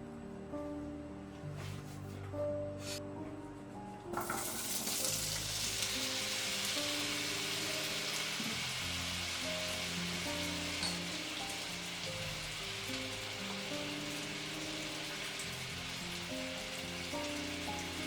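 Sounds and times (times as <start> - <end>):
background music: 0.0 - 18.0
food sizzling in a frying pan: 4.2 - 18.0.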